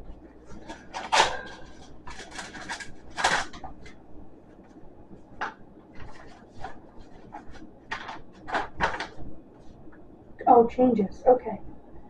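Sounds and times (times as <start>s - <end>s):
paper rustling: 0.5s - 4.0s, 5.4s - 9.8s.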